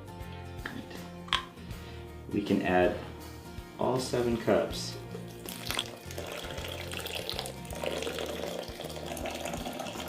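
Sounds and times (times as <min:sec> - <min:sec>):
background music: 0:00.0 - 0:10.0
water pouring in a stream: 0:05.3 - 0:10.0.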